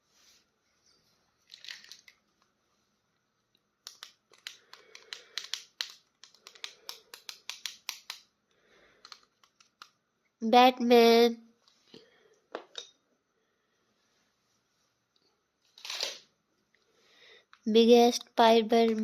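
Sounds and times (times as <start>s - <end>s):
sharp clicks and snips: 3.8s - 8.3s, 8.9s - 10.0s.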